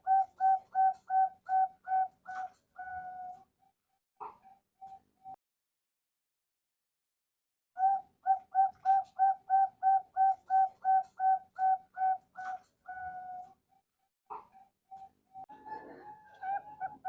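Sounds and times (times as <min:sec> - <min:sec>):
dove cooing: 0:00.0 - 0:03.4, 0:07.8 - 0:13.6, 0:14.3 - 0:17.0.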